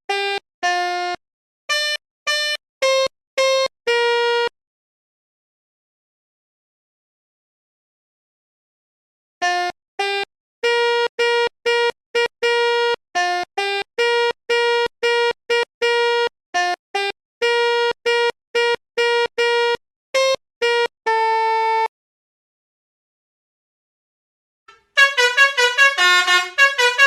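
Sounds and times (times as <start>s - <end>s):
synthesized horn tune: 24.7s - 27.0s.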